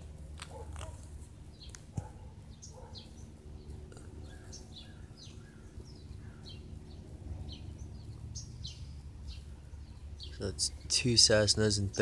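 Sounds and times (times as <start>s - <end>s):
airplane engine drone overhead: 0.0s - 12.0s
small birds chirping: 0.0s - 12.0s.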